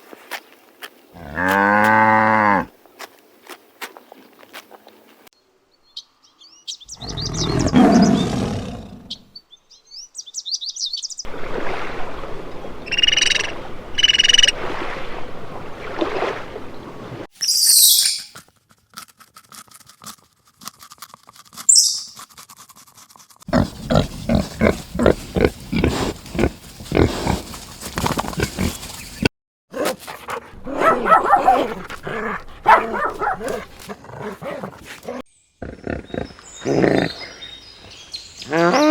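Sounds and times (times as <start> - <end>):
animal calls and cries: 6.8 - 9.3, 23.5 - 38.9.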